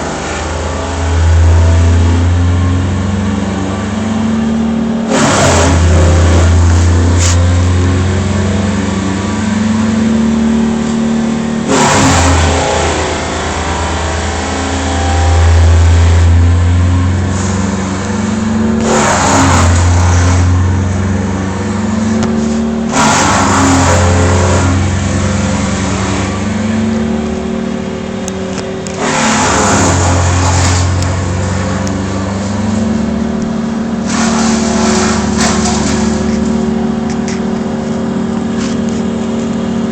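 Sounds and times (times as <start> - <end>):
large engine running: 0.0 - 39.9
machine taking a load: 34.0 - 37.7.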